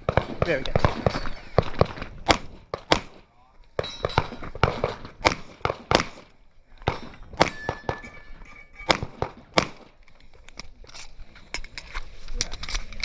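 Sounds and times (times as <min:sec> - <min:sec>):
airsoft pistol shots: 0:00.0 - 0:03.2, 0:04.2 - 0:06.3, 0:08.9 - 0:09.9.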